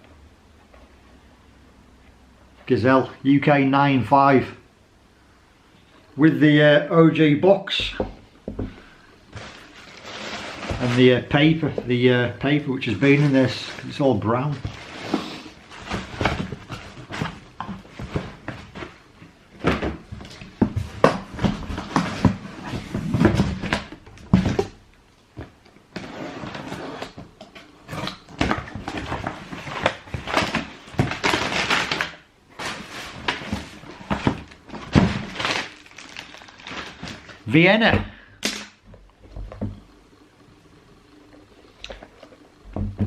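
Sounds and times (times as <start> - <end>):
paper and cardboard rustling: 8.8 - 24.7, 27.8 - 37.4
knocks and thuds: 42.7 - 43.0.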